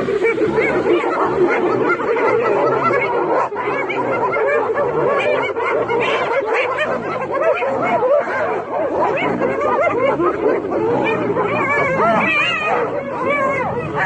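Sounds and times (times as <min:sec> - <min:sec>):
hyenas giggling chorus: 0:00.0 - 0:14.0.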